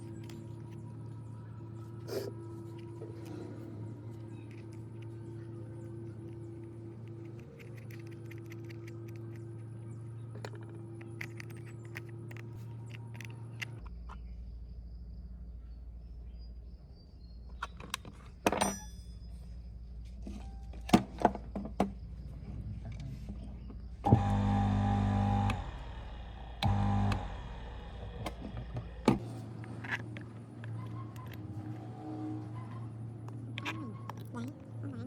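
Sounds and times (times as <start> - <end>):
small metal parts clinking: 4.2 - 14.3
workshop hum: 20.0 - 34.9.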